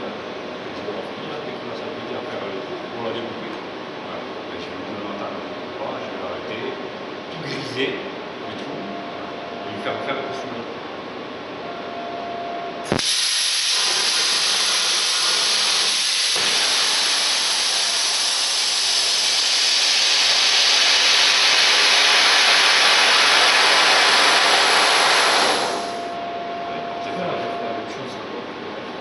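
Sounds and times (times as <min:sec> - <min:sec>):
cutting machine hissing: 0:12.9 - 0:26.2.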